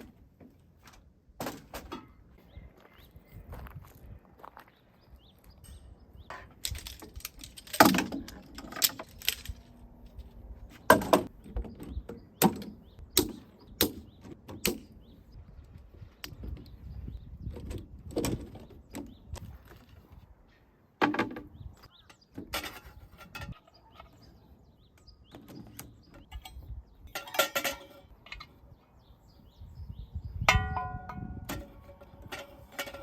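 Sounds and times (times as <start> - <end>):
objects knocking and clattering: 5.7 - 9.8, 25.3 - 28.6.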